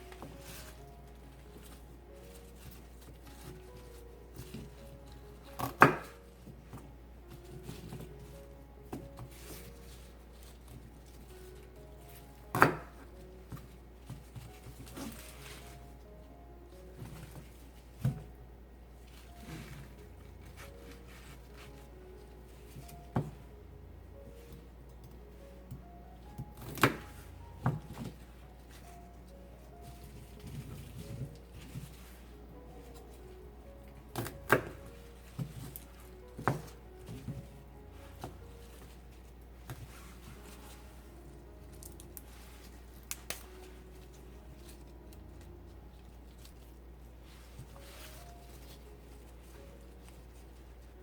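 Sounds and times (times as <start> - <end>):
soft background music: 0.0 - 51.0
hand handling sounds: 24.3 - 51.0
celery stalks snapping: 43.0 - 43.7.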